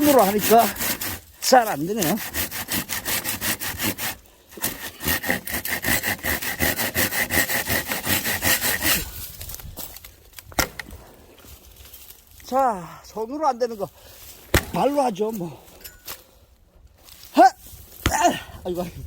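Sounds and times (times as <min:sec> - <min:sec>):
hand saw cutting log: 0:00.0 - 0:09.2.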